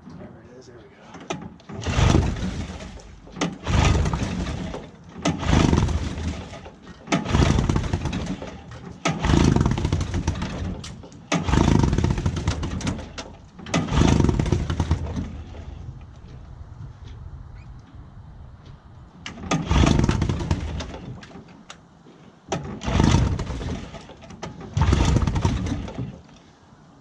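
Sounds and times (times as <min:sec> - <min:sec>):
outboard engine cranking: 0:01.0 - 0:16.0, 0:19.2 - 0:21.7, 0:22.5 - 0:26.4.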